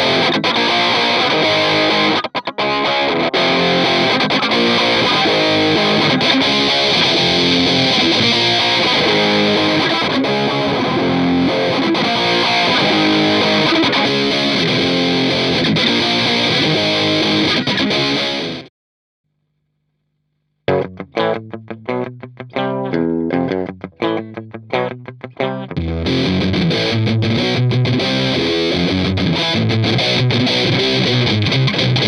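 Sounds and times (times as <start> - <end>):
distorted electric guitar riff: 0.0 - 18.7, 20.6 - 32.0.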